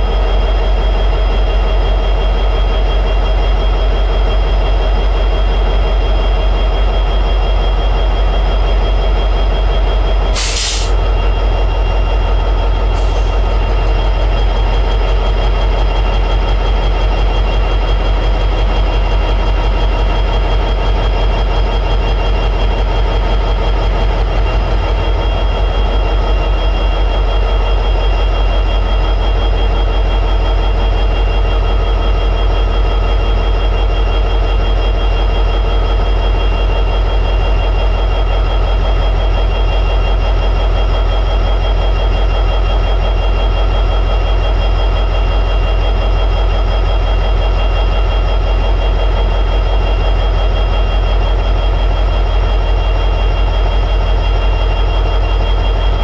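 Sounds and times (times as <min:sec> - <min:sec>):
diesel engine idling with whine: 0:00.0 - 0:56.0
air hiss: 0:10.4 - 0:11.0.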